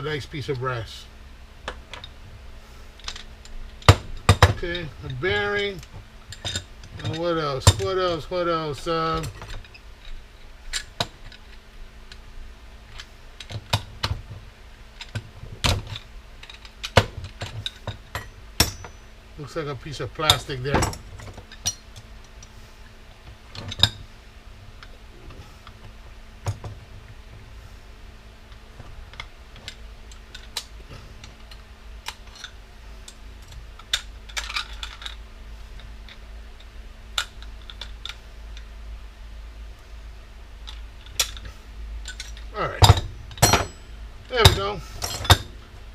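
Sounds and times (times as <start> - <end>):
low steady hum: 0.0 - 45.9
small metal parts clicking and tapping: 3.0 - 12.2, 15.0 - 19.1, 20.2 - 22.5, 28.5 - 35.2, 35.8 - 38.7, 40.6 - 45.6.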